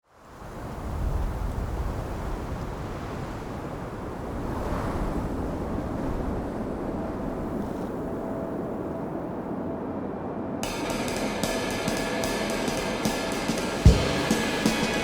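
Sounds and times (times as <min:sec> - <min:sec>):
steady rushing noise: 0:04.0 - 0:15.0.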